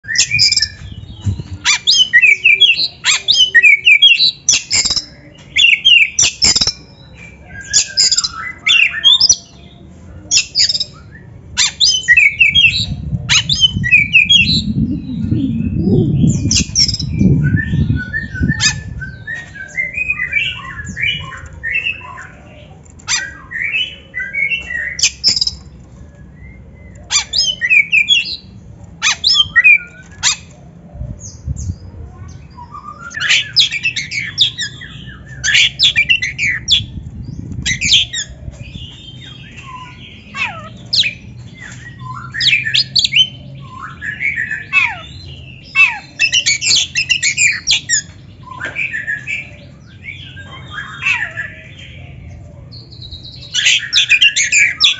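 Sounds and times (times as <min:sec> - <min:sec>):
low rumble: 0:12.4 - 0:19.3.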